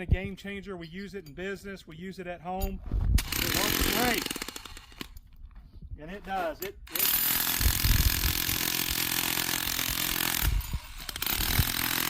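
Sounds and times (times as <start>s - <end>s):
electric jackhammer hammering rock: 3.2s - 5.1s, 6.9s - 12.0s.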